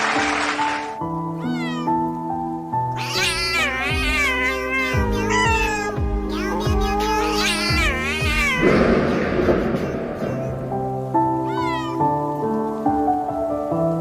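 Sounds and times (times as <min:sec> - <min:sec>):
cat meowing: 0:01.3 - 0:02.2, 0:02.9 - 0:12.4
rushing noise: 0:08.1 - 0:12.2.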